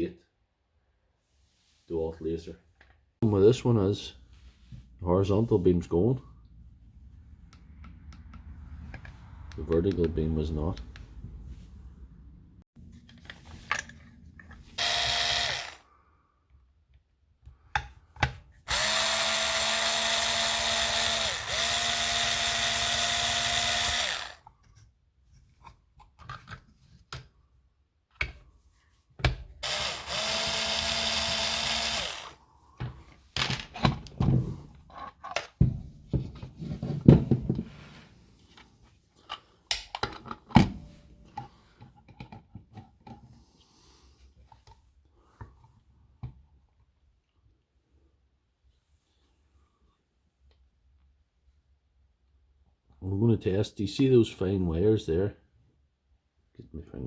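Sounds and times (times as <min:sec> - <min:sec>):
cordless drill running: 0:14.8 - 0:15.8, 0:18.7 - 0:24.4, 0:29.6 - 0:32.4.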